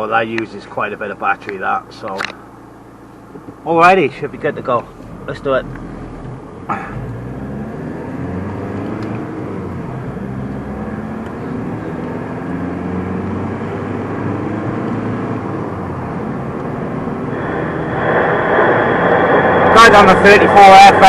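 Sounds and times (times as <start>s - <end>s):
road noise inside car: 0.0s - 21.0s
car engine accelerating: 2.2s - 21.0s.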